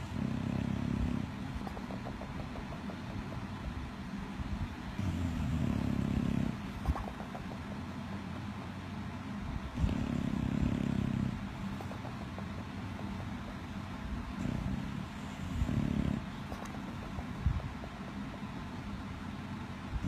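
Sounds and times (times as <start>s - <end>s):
dog snoring: 0.0s - 3.0s, 5.0s - 7.4s, 9.7s - 12.4s, 14.3s - 17.2s.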